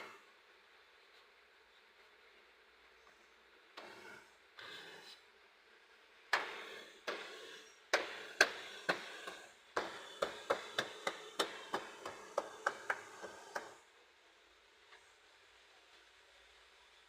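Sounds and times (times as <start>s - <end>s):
sharp knocks: 7.9s - 13.8s.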